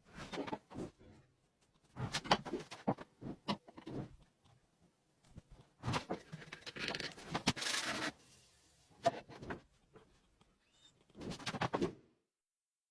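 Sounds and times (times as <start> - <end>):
rubbing and scraping by hand: 7.2 - 8.8.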